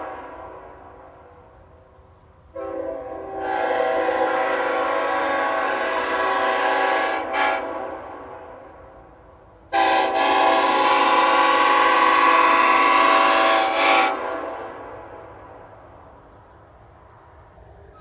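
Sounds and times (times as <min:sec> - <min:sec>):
locomotive air horn chord: 0:00.0 - 0:01.5, 0:02.5 - 0:08.8, 0:09.7 - 0:15.2.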